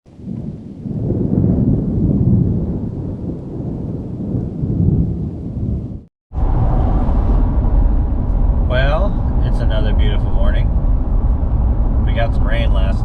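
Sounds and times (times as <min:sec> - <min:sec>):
rolling thunder: 0:00.1 - 0:13.0
vehicle engine running: 0:06.3 - 0:13.0.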